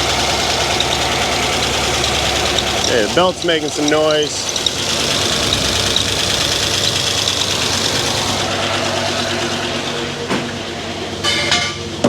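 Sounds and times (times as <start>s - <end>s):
car engine idling: 0.0s - 12.0s
drive belt squeaking: 0.0s - 12.0s.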